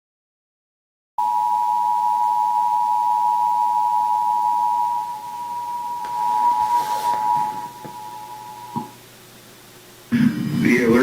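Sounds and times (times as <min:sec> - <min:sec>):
two-tone alarm signal: 0:01.2 - 0:09.0.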